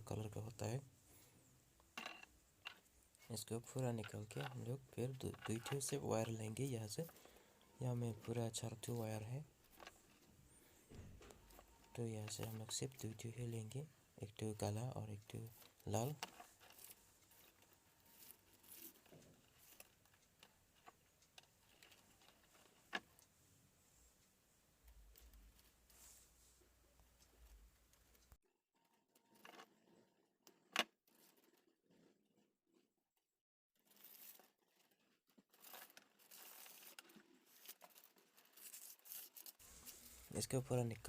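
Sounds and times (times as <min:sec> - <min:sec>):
small clicks of handling wires: 0:01.8 - 0:07.8, 0:08.8 - 0:13.8, 0:15.1 - 0:23.3, 0:24.2 - 0:26.3, 0:33.9 - 0:40.6.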